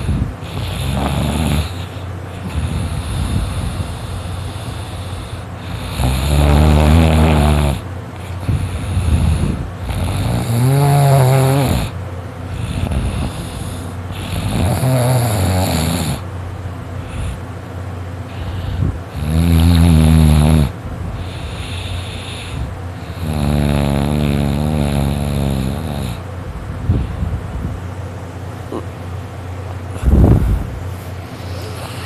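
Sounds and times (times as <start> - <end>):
person snoring loudly: 0.0 - 7.8, 8.4 - 12.0, 12.6 - 16.2, 18.3 - 26.2
breathing: 1.7 - 6.1, 8.2 - 9.7, 12.5 - 14.4, 17.0 - 17.5, 18.3 - 19.0, 21.1 - 23.2, 26.8 - 27.4.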